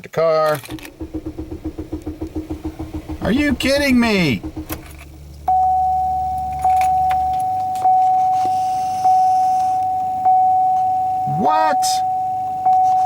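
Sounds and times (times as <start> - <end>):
low hum: 0.6 - 11.2
dashboard warning chime dinging: 3.6 - 13.0.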